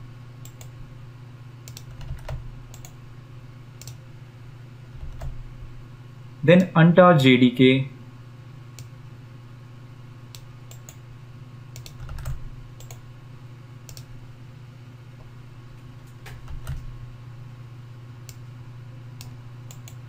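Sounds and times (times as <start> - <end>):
low electrical hum: 0.0 - 20.0
computer keyboard key presses: 1.7 - 3.0, 5.0 - 5.4, 11.8 - 13.0, 16.2 - 16.9.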